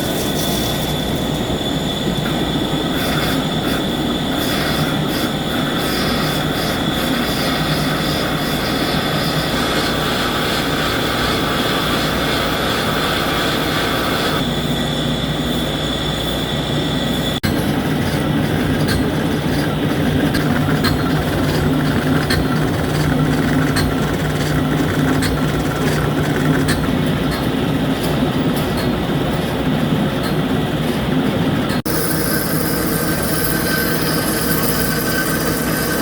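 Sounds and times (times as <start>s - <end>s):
machine tool cutting metal: 17.5s - 26.9s, 31.9s - 36.0s
high cutting whine: 31.9s - 36.0s.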